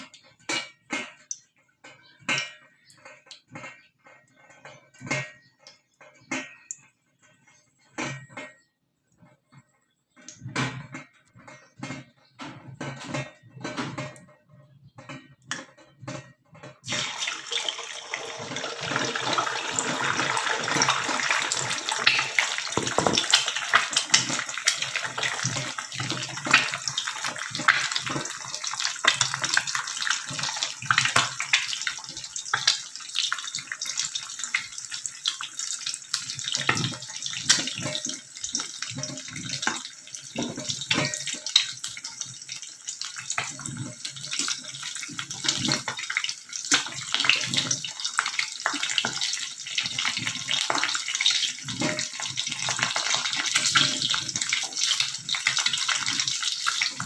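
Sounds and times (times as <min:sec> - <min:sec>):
tap water running into sink: 0:16.8 - 0:57.0.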